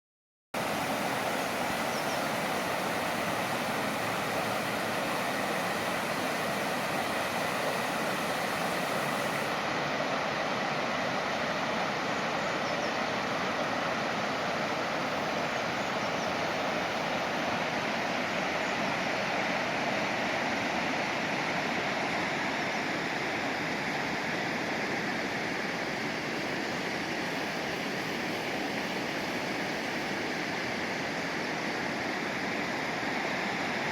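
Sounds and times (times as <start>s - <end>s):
river water rushing: 0.6s - 33.9s.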